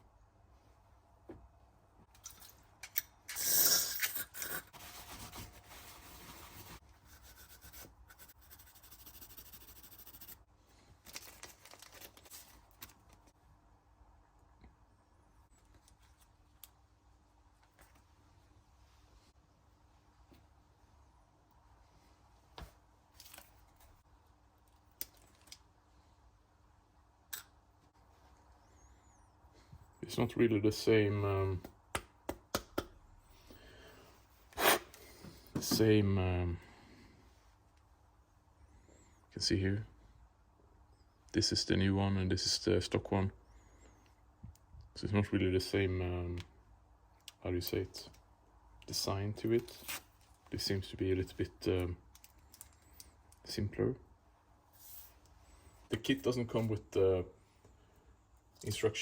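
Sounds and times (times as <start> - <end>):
small parts handling noises: 10.9 - 13.4, 23.1 - 24.0, 24.6 - 25.7, 52.0 - 53.5.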